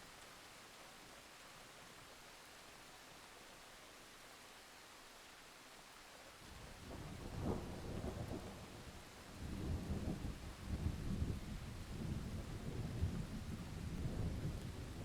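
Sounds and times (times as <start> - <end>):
low rolling thunder: 9.4 - 15.0.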